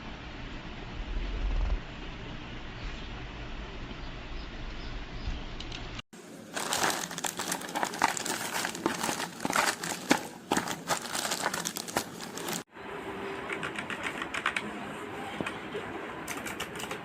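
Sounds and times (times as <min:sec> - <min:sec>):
plastic packaging crinkling: 0:06.4 - 0:12.7.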